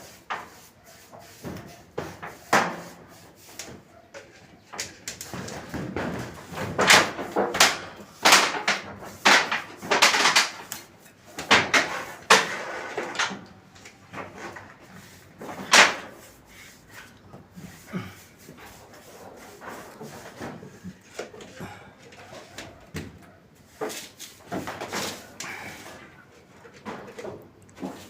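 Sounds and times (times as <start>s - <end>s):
rough scrapes and knocks: 0.0s - 13.5s, 14.1s - 21.6s, 23.2s - 28.0s.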